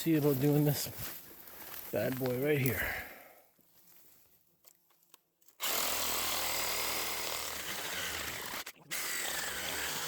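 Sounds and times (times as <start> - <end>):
reciprocating saw cutting wood: 5.6 - 10.0.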